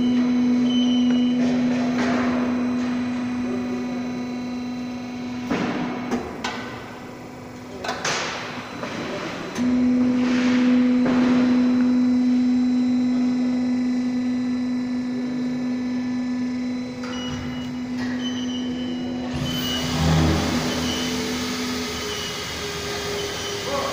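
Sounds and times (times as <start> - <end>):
clear tone: 0.0 - 1.6
steady machine hum: 0.0 - 23.9.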